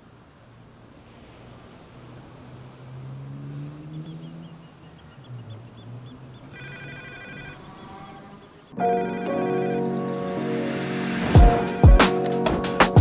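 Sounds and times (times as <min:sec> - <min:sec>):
trilling electronic ring: 0:06.6 - 0:07.6, 0:08.8 - 0:09.8, 0:11.1 - 0:12.0
loud music: 0:11.0 - 0:13.0.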